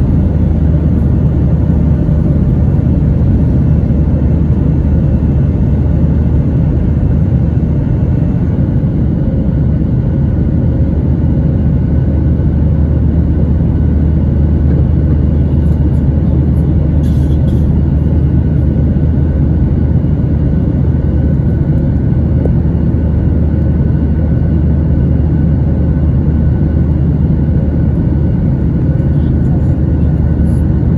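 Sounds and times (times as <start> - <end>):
faint steady whine: 0.0 - 10.8
airplane cabin engine rumble: 0.0 - 30.9.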